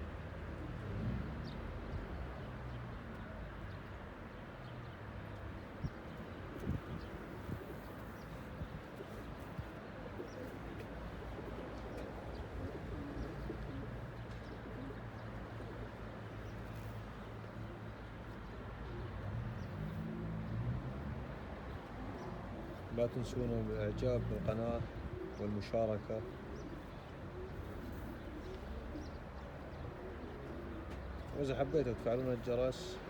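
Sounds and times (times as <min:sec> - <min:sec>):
small birds chirping: 0:03.2 - 0:20.2, 0:21.2 - 0:33.0
pigeons cooing: 0:06.1 - 0:33.0.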